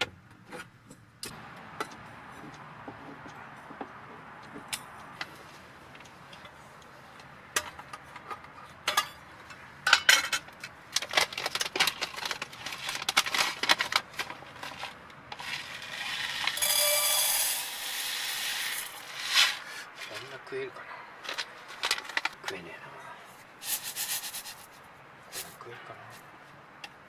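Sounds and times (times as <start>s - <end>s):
steady hiss: 23.6s - 25.6s.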